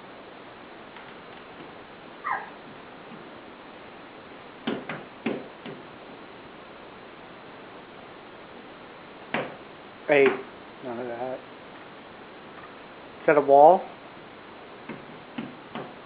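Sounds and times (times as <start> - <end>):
steady hiss: 0.0 - 16.0
toddler squealing: 2.2 - 2.6.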